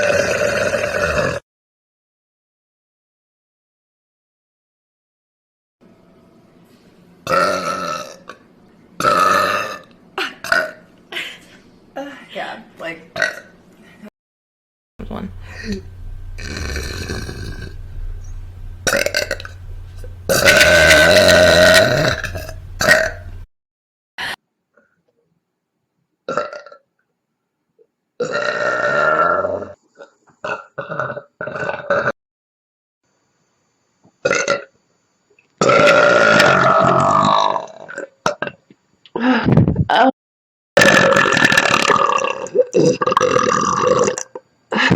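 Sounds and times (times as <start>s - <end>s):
person burping: 0.0s - 1.4s, 7.3s - 8.4s, 9.0s - 10.8s, 15.2s - 17.9s, 18.8s - 23.3s, 26.3s - 26.8s, 28.2s - 29.6s, 30.4s - 32.1s, 34.2s - 34.7s, 35.6s - 38.6s, 40.8s - 44.9s.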